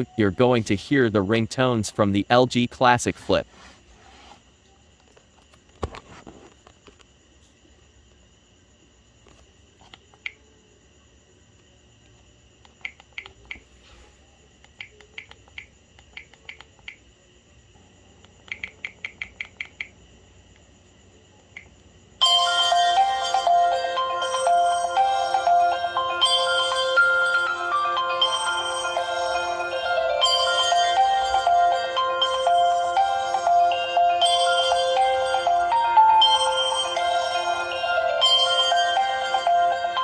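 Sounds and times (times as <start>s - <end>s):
ringtone melody: 22.2s - 40.0s.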